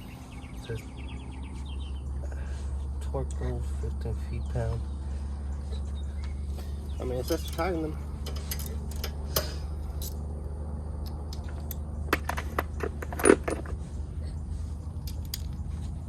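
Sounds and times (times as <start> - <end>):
metal tools and bolts clinking: 7.0 - 10.3, 11.1 - 13.8, 15.0 - 15.6.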